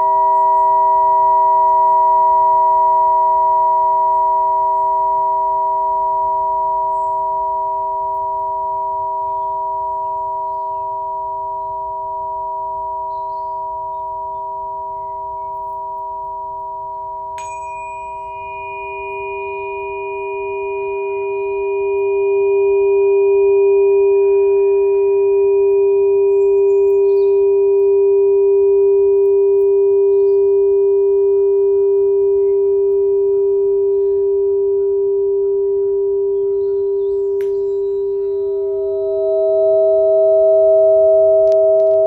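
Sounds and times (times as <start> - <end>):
sustained ringing musical tones: 6.5 - 25.0.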